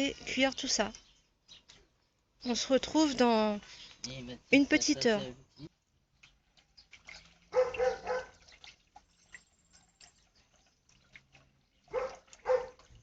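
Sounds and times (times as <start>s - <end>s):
dog barking: 7.5s - 8.4s, 11.9s - 12.8s.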